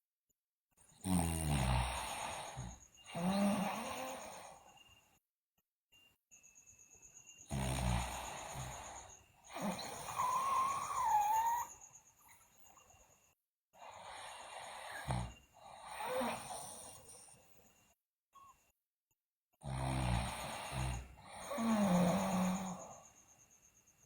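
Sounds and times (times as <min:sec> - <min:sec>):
girl snoring: 0:01.0 - 0:04.8, 0:07.5 - 0:12.0, 0:13.8 - 0:17.4, 0:19.6 - 0:23.2.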